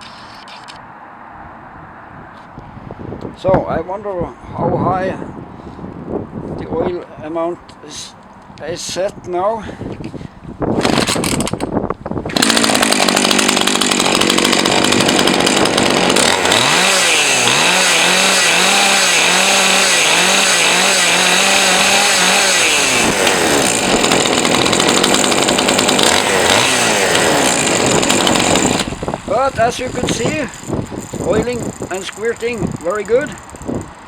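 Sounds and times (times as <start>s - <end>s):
chainsaw revving high: 10.8s - 11.6s, 12.3s - 34.0s.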